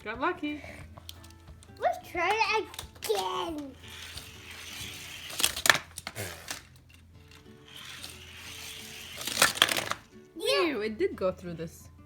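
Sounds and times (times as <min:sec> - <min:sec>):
soft background music: 0:00.0 - 0:12.0
toy cars rolling on plastic track: 0:02.2 - 0:10.1.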